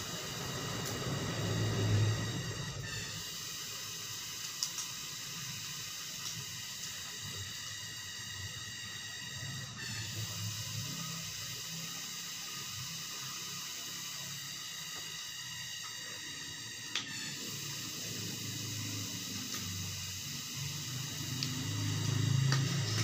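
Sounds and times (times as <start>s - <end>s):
steady hiss: 0.0s - 7.6s
faint high whining tones: 0.0s - 23.0s.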